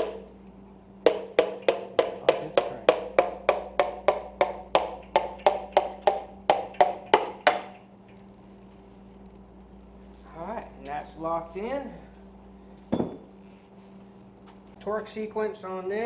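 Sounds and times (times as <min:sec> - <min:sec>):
light ringing taps on metal: 0:12.9 - 0:13.3.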